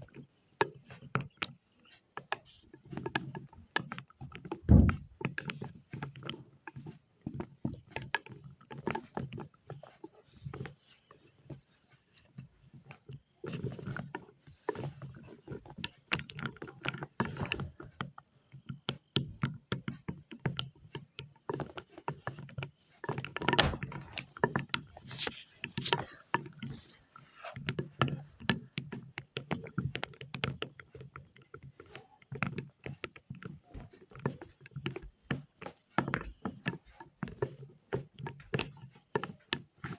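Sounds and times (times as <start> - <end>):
wet chalk crackling: 23.6 - 27.5.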